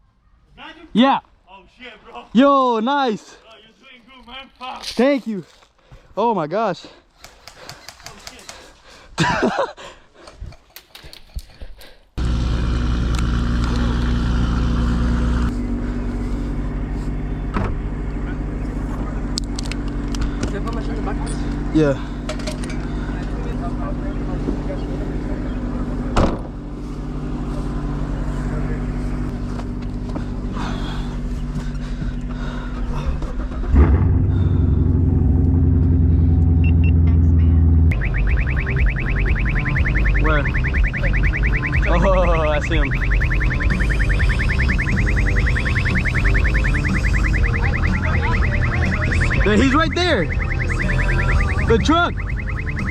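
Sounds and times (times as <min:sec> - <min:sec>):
car engine running: 0:12.2 - 0:52.9
high repeating warble: 0:37.9 - 0:52.9.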